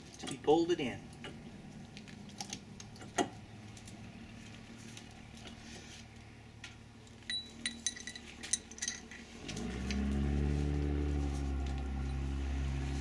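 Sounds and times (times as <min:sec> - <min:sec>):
metallic clinks of handled parts: 0:07.3 - 0:09.3.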